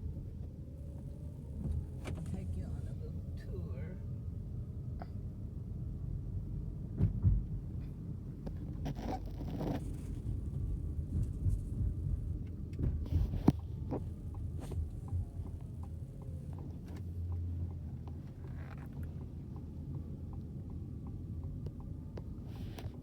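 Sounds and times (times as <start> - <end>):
car driving rumble: 0.0 - 23.0
turn signal ticking: 13.5 - 23.0.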